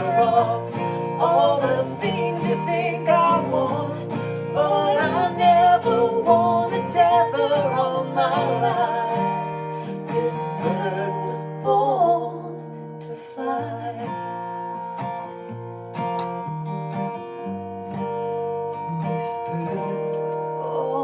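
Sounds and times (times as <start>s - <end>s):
wordless singing: 0.0s - 14.1s
acoustic guitar strumming: 0.0s - 21.0s.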